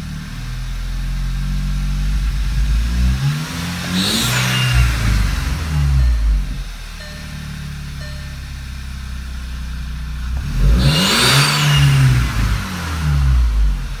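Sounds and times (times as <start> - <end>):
car engine idling and revving: 0.0 - 14.0.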